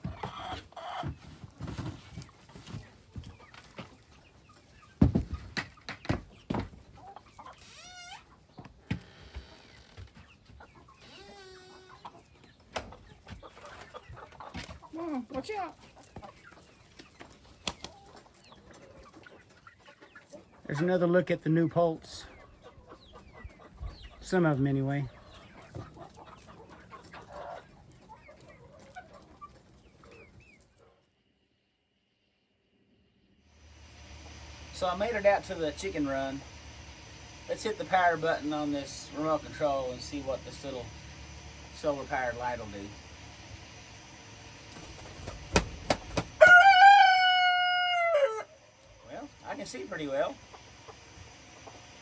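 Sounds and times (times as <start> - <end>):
drawn-out wavering chicken calls: 0.0 - 6.2, 6.8 - 8.7, 9.4 - 21.0, 22.1 - 31.0, 33.6 - 52.0
chickens clucking: 0.0 - 31.2, 33.6 - 52.0
sharp knocks: 45.2 - 46.4.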